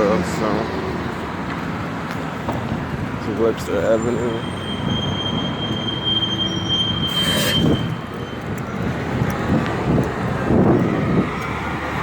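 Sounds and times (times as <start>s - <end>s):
passing vehicles rumbling: 0.0s - 12.0s
high steady squeal: 4.2s - 8.5s.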